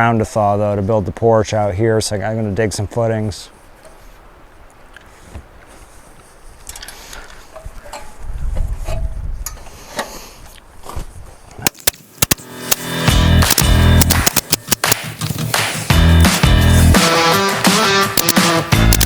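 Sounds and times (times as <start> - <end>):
loud music: 12.4 - 19.0.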